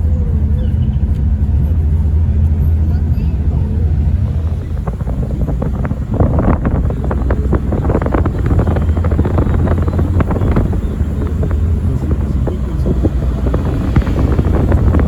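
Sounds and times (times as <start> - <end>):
wind buffeting microphone: 2.2 - 15.0.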